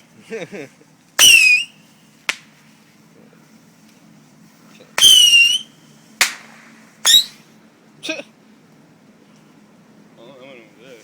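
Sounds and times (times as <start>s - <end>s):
firework whistle: 1.2s - 1.9s, 5.0s - 7.5s
fireworks cracking: 1.2s - 2.8s, 5.0s - 7.4s.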